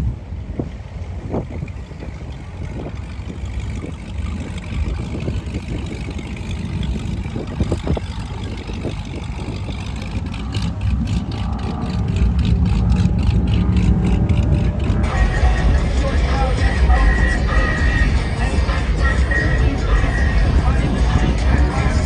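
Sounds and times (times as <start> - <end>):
motorboat engine rumbling: 0.0 - 22.0.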